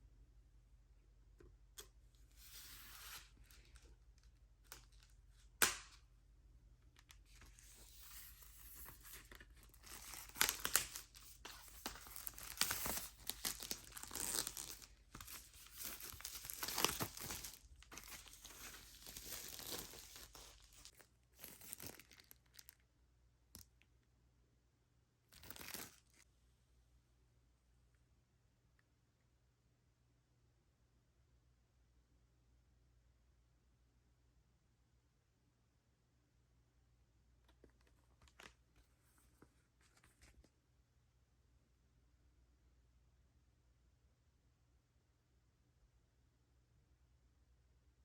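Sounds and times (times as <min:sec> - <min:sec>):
packaging tearing and rustling: 0:07.7 - 0:22.7, 0:25.4 - 0:26.2.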